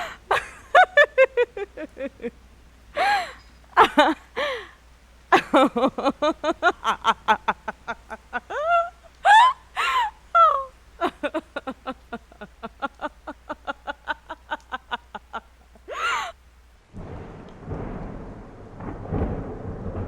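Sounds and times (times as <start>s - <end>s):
rain: 0.0s - 20.0s
low rumble of thunder: 16.9s - 20.0s.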